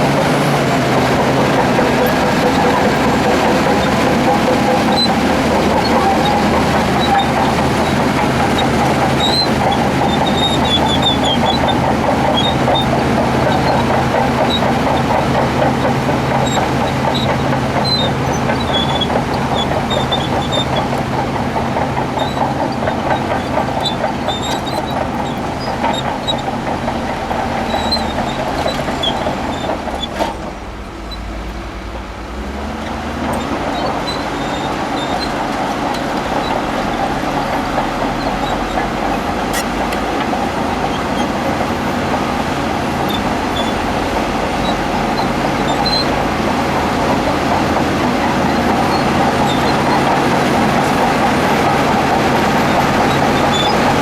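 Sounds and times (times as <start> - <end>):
steel tracks squeaking and clanking: 0.0 - 31.6, 32.3 - 54.0
bulldozer diesel engine running: 0.0 - 54.0.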